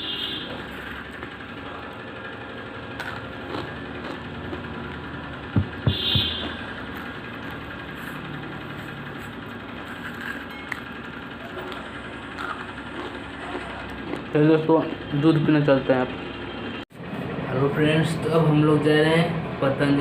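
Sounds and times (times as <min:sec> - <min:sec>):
steady mechanical hum: 0:00.0 - 0:20.0
sharp knocks: 0:05.5 - 0:06.6.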